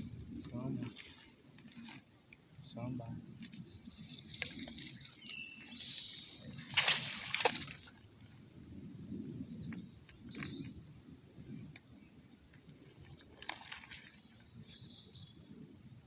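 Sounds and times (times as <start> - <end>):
creek water sloshing: 3.4 - 8.3, 12.8 - 15.0
water splash: 6.5 - 8.0, 13.3 - 14.2.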